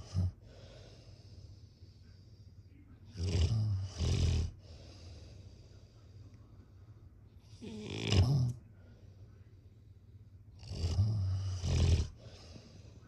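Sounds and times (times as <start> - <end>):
person snoring: 7.6 - 8.6, 10.6 - 12.4.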